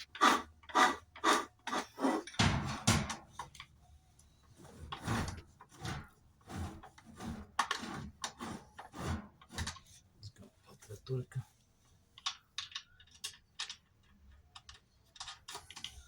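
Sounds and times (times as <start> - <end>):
transmission scraping and knocking: 0.0 - 3.7, 4.4 - 10.0.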